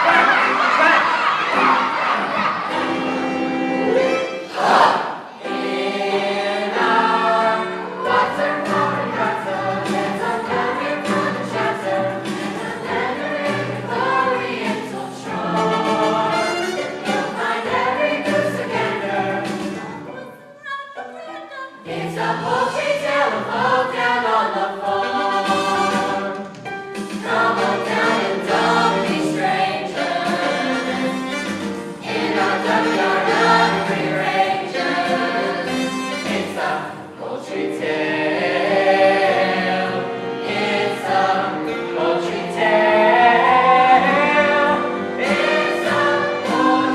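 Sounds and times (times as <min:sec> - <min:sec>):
group of voices singing: 0:00.0 - 0:46.9.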